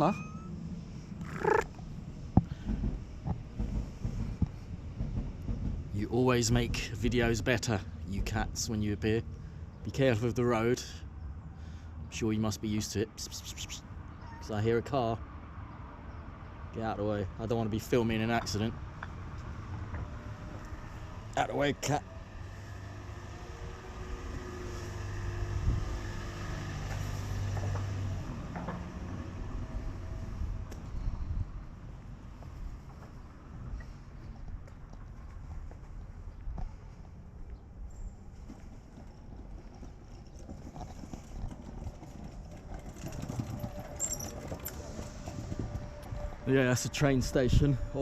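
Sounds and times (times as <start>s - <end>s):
car engine passing by: 19.6s - 30.7s
footsteps on pavement: 26.4s - 27.9s.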